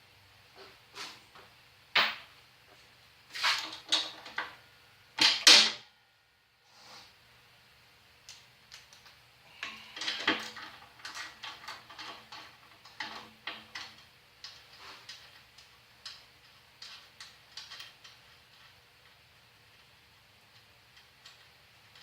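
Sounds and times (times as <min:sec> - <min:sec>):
hand tools and parts clicking: 0:08.3 - 0:18.8.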